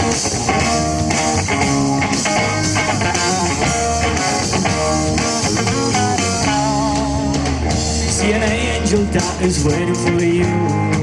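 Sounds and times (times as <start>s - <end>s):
live rock band playing: 0.0s - 11.0s.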